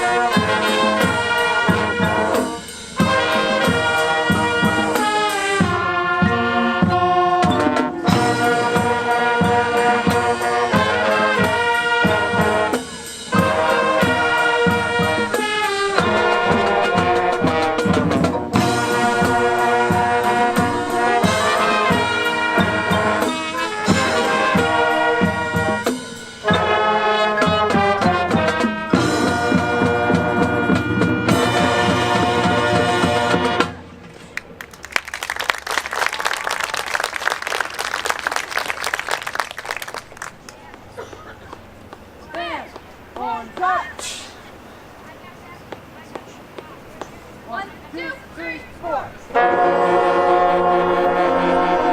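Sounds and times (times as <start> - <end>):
steady drum beat: 0.0 - 33.9
brass section chords: 0.0 - 34.0, 47.4 - 51.9.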